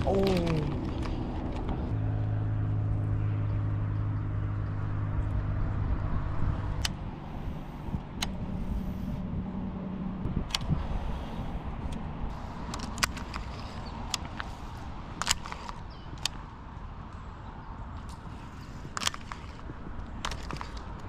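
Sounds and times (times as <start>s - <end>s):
engine humming: 0.0s - 21.0s
faint outdoor rumble: 0.0s - 21.0s
sharp clicks: 12.6s - 17.2s, 18.0s - 21.0s.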